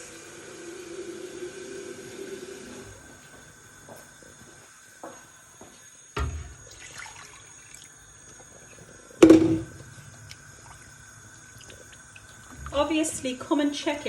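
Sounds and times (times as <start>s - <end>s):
water splashing into pot: 6.2s - 8.4s, 9.2s - 13.4s.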